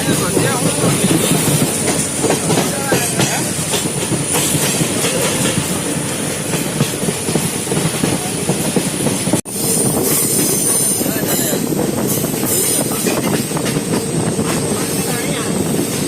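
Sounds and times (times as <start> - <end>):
wheels clattering on rail joints: 0.0 - 9.4
train rumble: 0.0 - 16.0.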